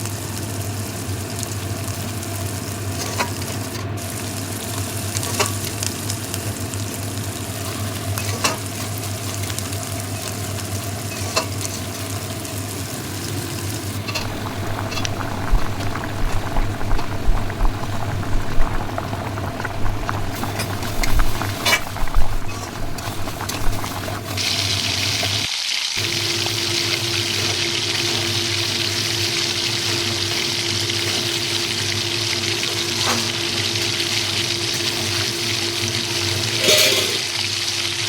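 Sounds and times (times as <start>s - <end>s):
food sizzling in a pan: 0.0s - 38.0s
stirring scraping and knocking: 14.0s - 24.4s, 36.6s - 37.2s.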